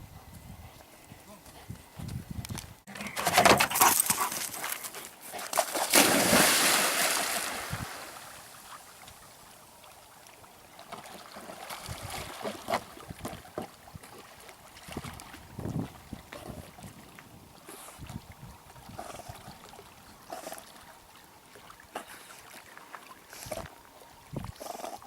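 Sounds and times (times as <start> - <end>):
dog splashing through water: 5.4 - 8.7.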